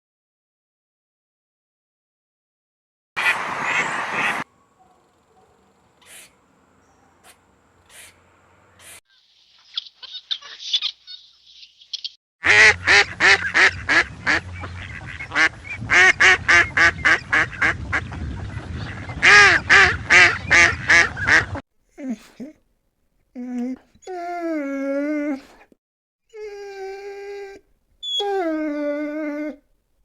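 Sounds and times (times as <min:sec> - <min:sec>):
honking bird calls: 0:03.2 - 0:21.6.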